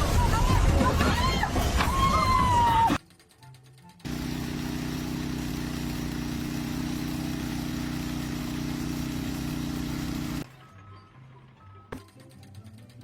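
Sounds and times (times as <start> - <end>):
loud machine drone: 4.1 - 10.4.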